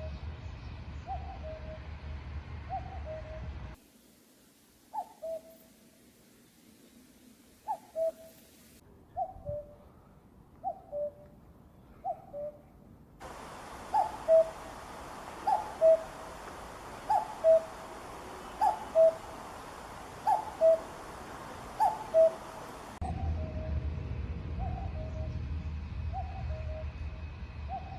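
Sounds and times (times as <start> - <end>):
steady background hiss: 3.7 - 8.9, 13.2 - 23.0
cuckoo calling: 4.9 - 5.7, 7.6 - 8.4, 13.2 - 23.6.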